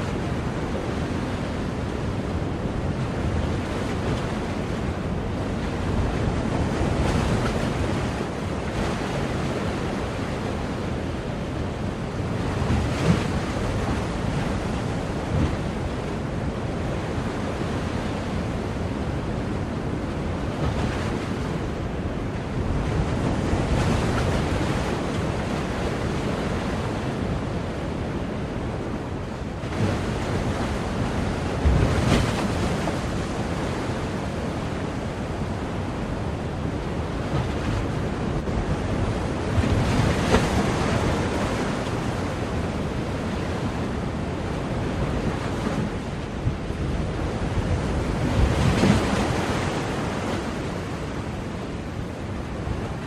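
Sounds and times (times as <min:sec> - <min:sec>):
ocean waves breaking on shore: 0:00.0 - 0:53.0
wind buffeting microphone: 0:18.6 - 0:53.0.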